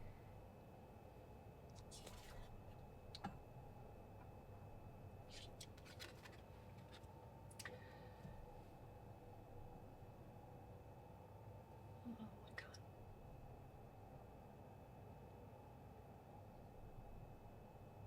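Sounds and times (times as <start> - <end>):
cards rustling and clicking: 1.8 - 2.5, 5.3 - 7.1.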